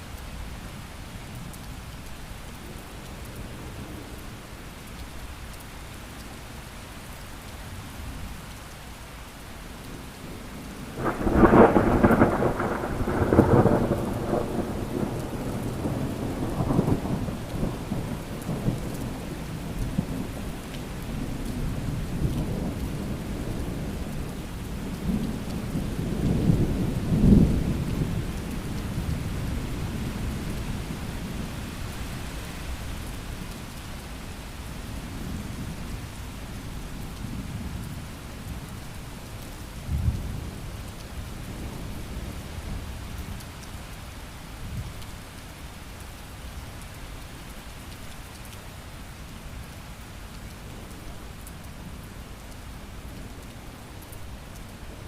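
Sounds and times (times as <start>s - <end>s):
steady rain: 0.0s - 55.0s
thunder rumbling: 10.9s - 20.3s.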